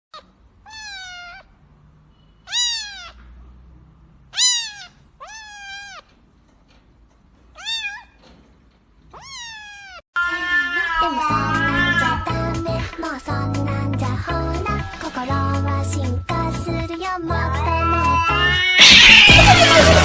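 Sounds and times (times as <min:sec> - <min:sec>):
cat meowing: 0:00.2 - 0:01.5, 0:02.4 - 0:03.3, 0:04.3 - 0:06.2, 0:07.5 - 0:08.2, 0:09.1 - 0:12.5, 0:17.6 - 0:20.0.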